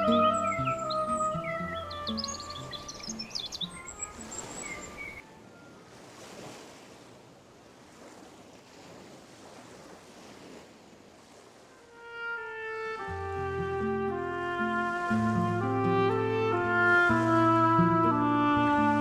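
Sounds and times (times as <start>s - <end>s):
birds chirping: 0.0s - 5.3s
music: 0.0s - 5.9s, 11.9s - 19.0s.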